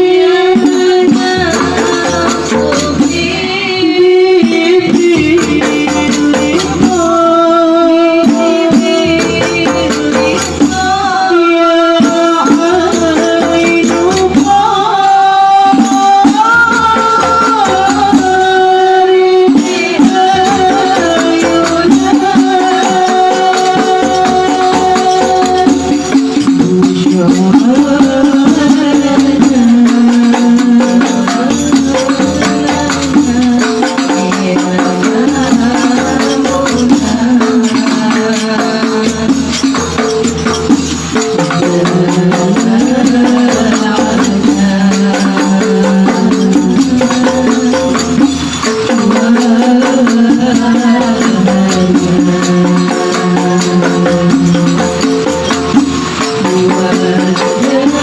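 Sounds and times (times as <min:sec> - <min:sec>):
person singing devotional song: 0:00.0 - 0:58.0
tambourine-like jingles: 0:19.5 - 0:58.0.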